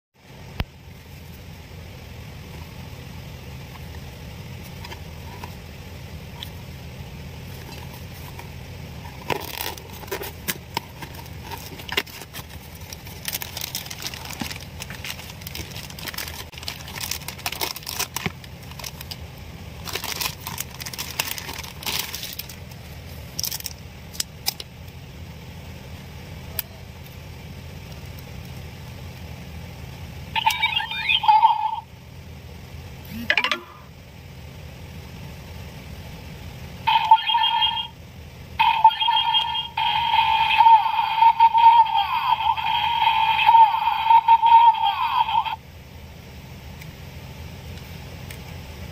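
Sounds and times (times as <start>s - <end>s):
steady low hum: 0.2s - 48.9s
packaging crinkling and tearing: 9.1s - 19.2s, 19.8s - 22.7s, 23.3s - 24.6s.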